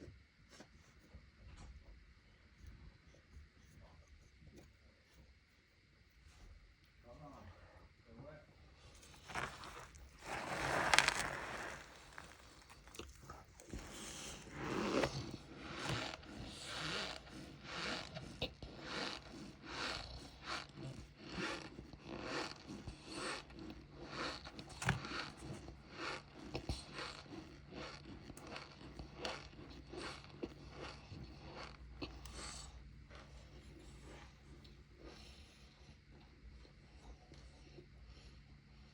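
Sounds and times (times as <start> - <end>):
chewing crunchy food: 8.9 - 38.9.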